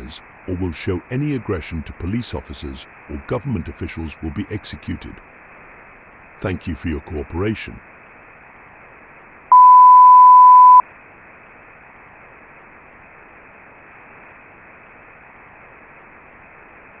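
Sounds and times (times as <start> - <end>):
static hiss: 0.0 - 17.0
electronic beep: 9.5 - 10.8.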